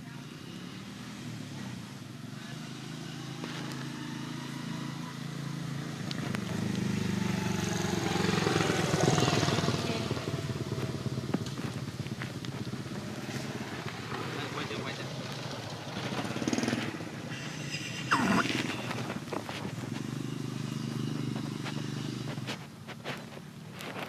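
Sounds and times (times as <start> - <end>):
vehicle engine passing by: 0.0 - 24.0.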